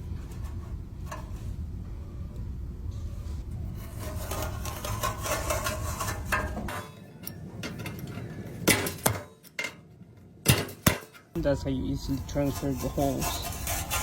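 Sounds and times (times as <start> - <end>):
sharp knocks on sheet metal: 10.5 - 11.2.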